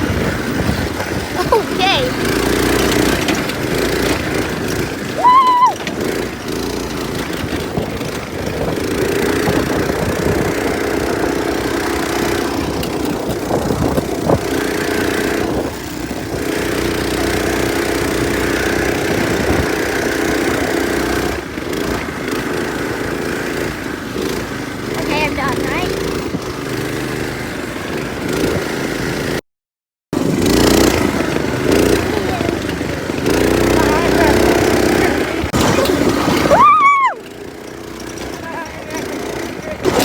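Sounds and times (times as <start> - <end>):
go-kart engine running: 0.0 - 29.4, 30.2 - 40.0
short high cry: 5.2 - 5.8, 36.5 - 37.3.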